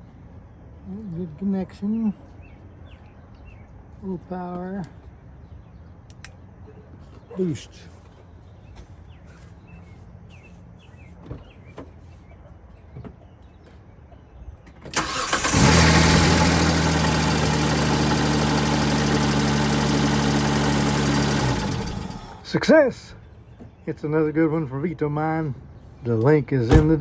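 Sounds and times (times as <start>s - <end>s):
car engine cranking and idling: 14.9s - 22.5s.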